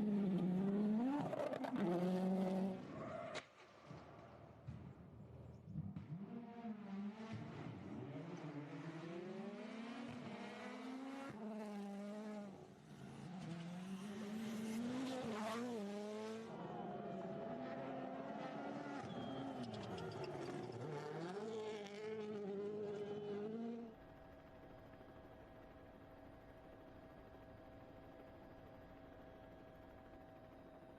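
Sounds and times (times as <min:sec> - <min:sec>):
rally car engine revving: 0:00.0 - 0:03.0, 0:06.0 - 0:23.9.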